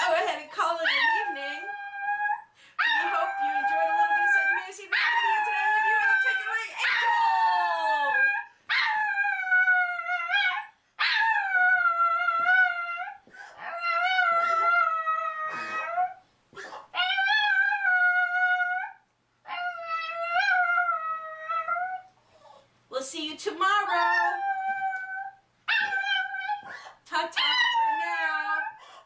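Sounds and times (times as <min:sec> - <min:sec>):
dog howling: 0:00.9 - 0:16.2, 0:23.9 - 0:26.7.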